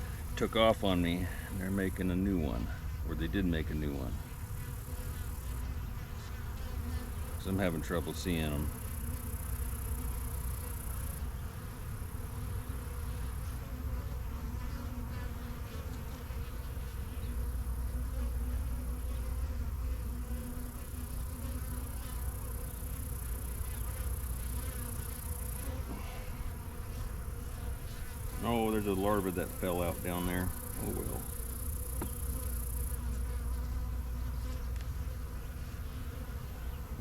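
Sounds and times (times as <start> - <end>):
honey bees buzzing: 0.0 - 37.0.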